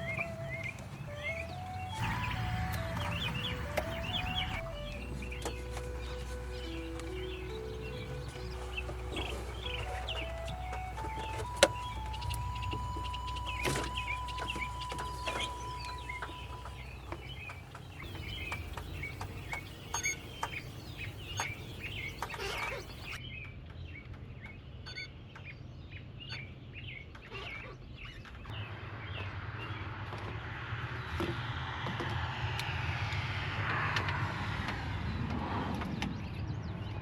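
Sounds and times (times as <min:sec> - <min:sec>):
birds clucking and chirping: 0:00.0 - 0:23.2
low hum: 0:00.0 - 0:23.2.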